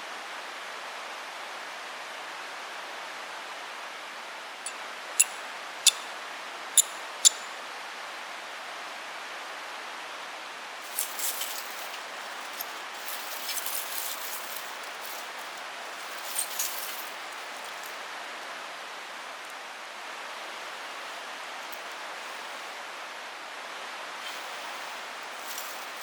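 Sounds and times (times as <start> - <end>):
steady hiss: 5.2 - 7.8, 10.6 - 26.0
campfire crackles and clicks: 6.8 - 7.5.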